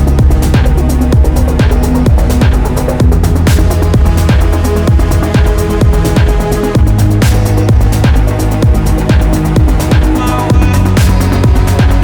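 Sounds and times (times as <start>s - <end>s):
electronic dance music: 0.0s - 12.0s
steady kick drum beat: 0.0s - 12.0s.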